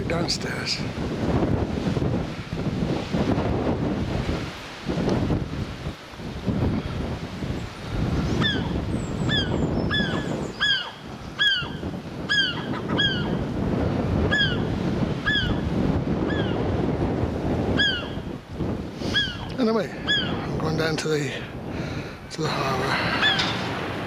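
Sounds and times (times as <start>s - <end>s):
wind rumble on microphone: 0.0s - 24.0s
seagull squawking: 8.4s - 13.4s, 14.3s - 14.6s, 15.2s - 15.6s, 16.3s - 16.6s, 17.8s - 18.2s, 19.1s - 20.4s, 22.9s - 23.6s.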